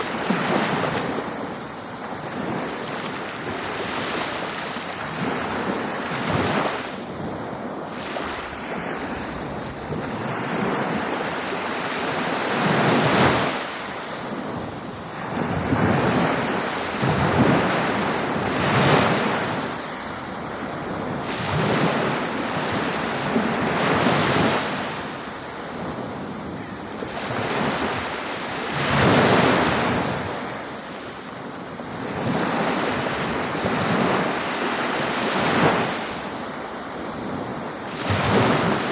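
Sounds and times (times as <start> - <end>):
waves breaking: 0.0 - 38.9
wind: 0.0 - 38.9.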